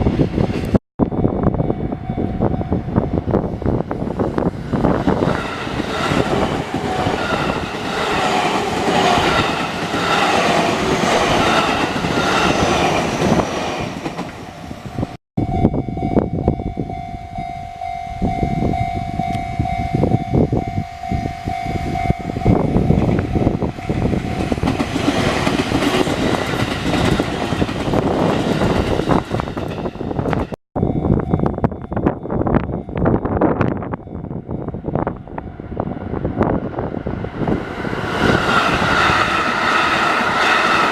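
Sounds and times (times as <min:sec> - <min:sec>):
train wheels clattering on rails: 0:24.1 - 0:30.6.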